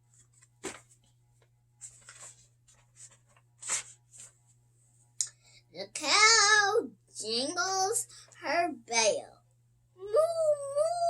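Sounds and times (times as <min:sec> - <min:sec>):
book pages rustling: 0:00.0 - 0:04.6.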